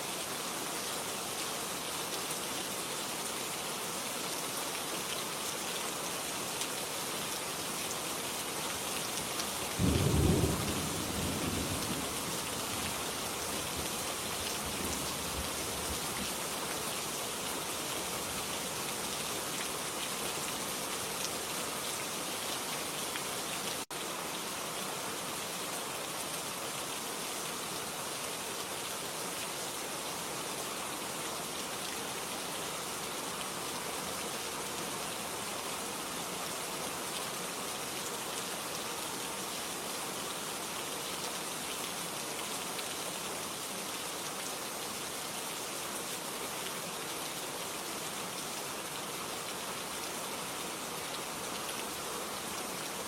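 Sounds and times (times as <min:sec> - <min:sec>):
rain hissing: 0:09.5 - 0:16.9.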